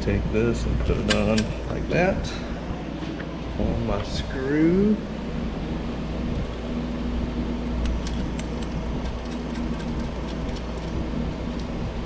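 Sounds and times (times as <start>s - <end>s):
low background hum: 0.0s - 12.0s
hand tools clicking on plastic: 7.8s - 11.7s.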